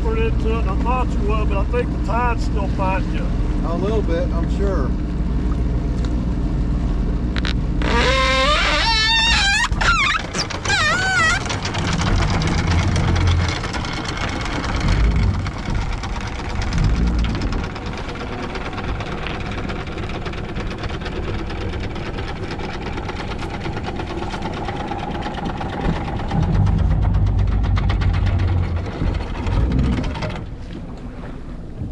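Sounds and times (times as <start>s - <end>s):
boat motor running under load: 0.0s - 31.9s
wind on microphone: 6.7s - 31.9s.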